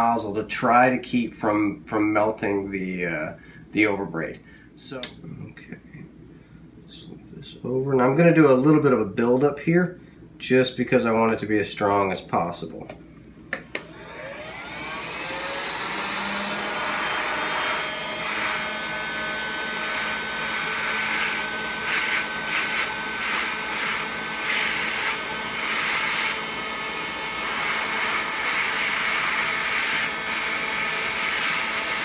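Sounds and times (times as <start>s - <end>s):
heat gun fan whining: 12.9s - 32.0s.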